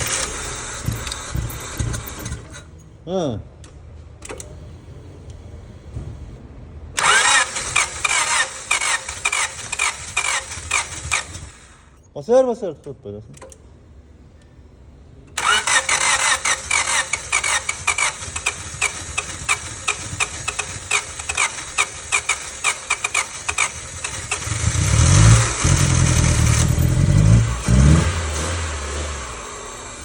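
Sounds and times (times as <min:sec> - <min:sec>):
car engine running and revving: 0:00.0 - 0:02.6, 0:15.4 - 0:30.0
starter motor cranking: 0:00.0 - 0:02.8, 0:07.0 - 0:12.0, 0:15.3 - 0:30.0.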